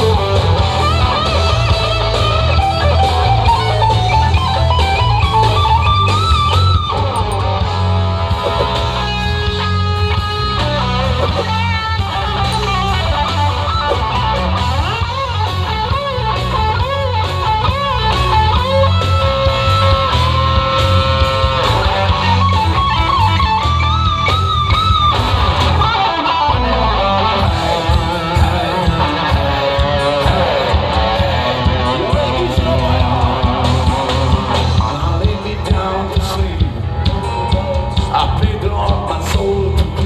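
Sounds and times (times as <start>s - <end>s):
bass guitar: 0.0s - 40.0s
drums: 0.0s - 40.0s
electric guitar lead: 0.0s - 40.0s.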